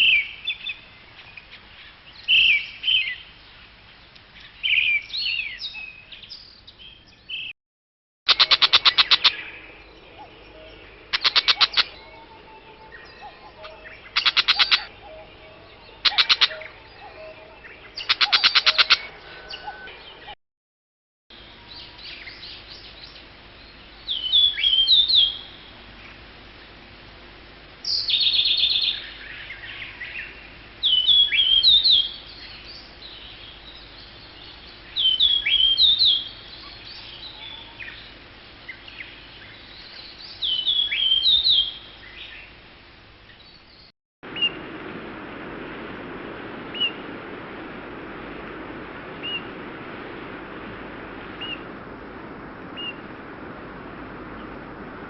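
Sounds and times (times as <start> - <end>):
bird whistling song: 8.3 - 20.2, 21.6 - 25.7, 27.8 - 38.0, 38.7 - 42.5.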